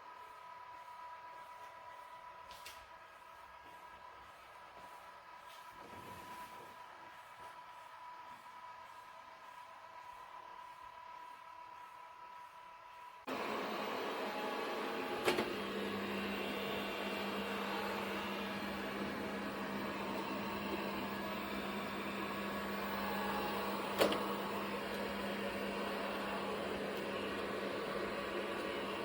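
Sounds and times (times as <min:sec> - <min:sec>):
robot vacuum whirring: 0:13.3 - 0:29.0.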